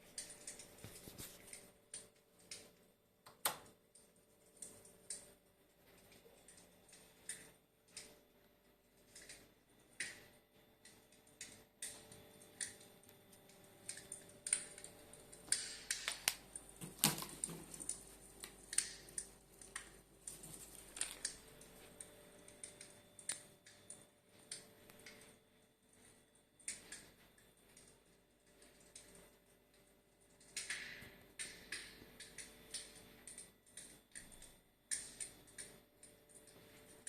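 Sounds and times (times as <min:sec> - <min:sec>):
sharp clicks and crackles: 0:00.0 - 0:08.2, 0:08.9 - 0:25.4, 0:26.0 - 0:37.0
faint steady hum: 0:00.0 - 0:37.0.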